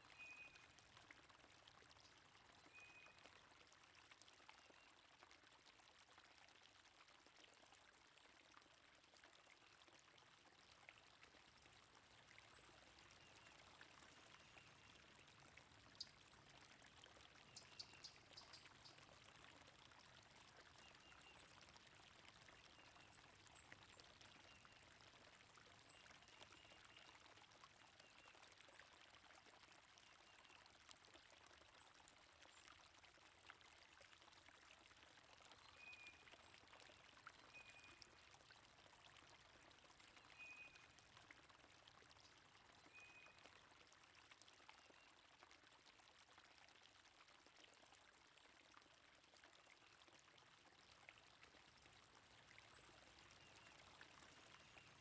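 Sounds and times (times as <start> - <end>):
stream flowing: 10.1 - 44.5, 49.4 - 55.0.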